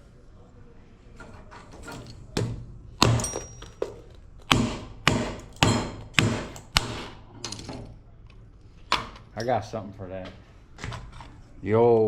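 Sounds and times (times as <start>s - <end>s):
hatchet striking lamp: 2.0s - 7.4s.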